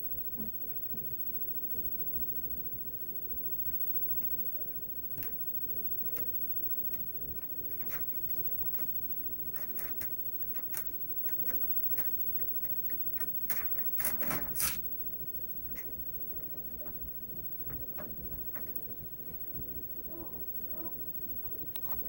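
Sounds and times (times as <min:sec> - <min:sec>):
clicks and taps on printer: 0:09.5 - 0:14.7, 0:17.6 - 0:18.8.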